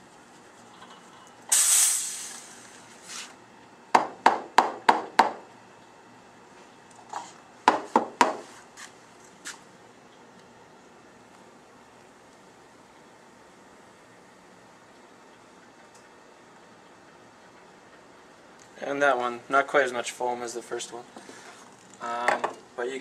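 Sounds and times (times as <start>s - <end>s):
steam wand hissing: 1.5s - 3.3s.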